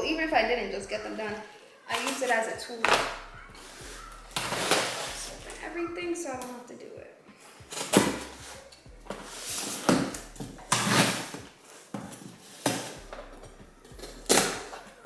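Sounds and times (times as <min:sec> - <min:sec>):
packaging rustling and ripping: 0:01.1 - 0:05.6, 0:07.4 - 0:13.2.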